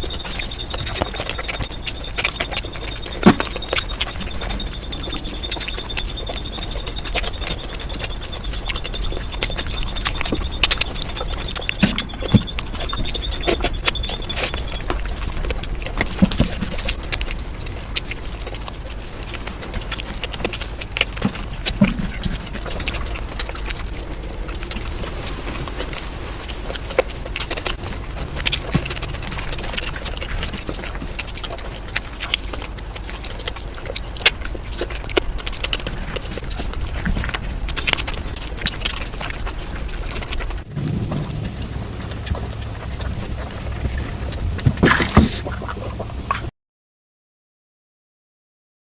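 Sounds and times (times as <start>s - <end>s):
faint high whine: 0.0s - 18.6s
chewing and mouth noises: 0.0s - 46.5s.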